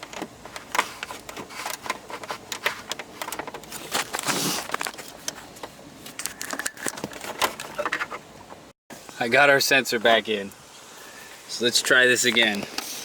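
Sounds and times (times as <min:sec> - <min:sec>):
hard plastic clicking and scraping: 0:00.0 - 0:08.7.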